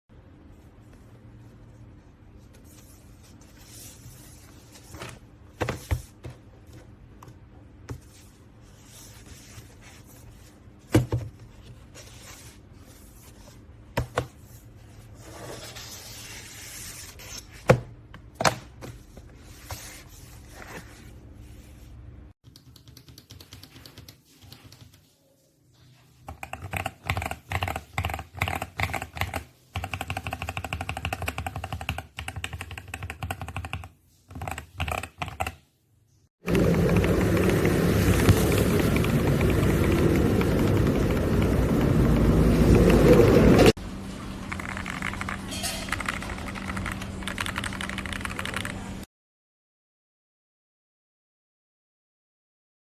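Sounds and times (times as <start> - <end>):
fast mechanical keyboard typing: 22.4 - 24.9, 26.3 - 35.6, 36.4 - 43.4, 44.5 - 49.1.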